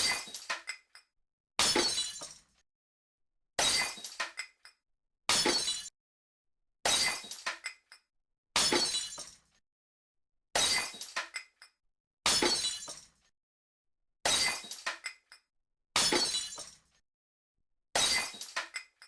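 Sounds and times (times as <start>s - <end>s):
glass smashing: 0.0s - 0.8s, 1.6s - 2.5s, 3.6s - 4.5s, 5.3s - 5.9s, 6.9s - 7.8s, 8.6s - 9.4s, 10.6s - 11.5s, 12.3s - 13.2s, 14.3s - 15.2s, 16.0s - 16.8s, 18.0s - 19.0s.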